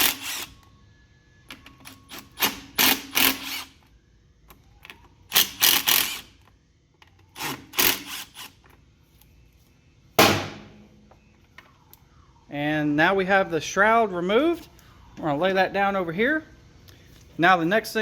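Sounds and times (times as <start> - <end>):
sharp metal clank: 10.2 - 10.9.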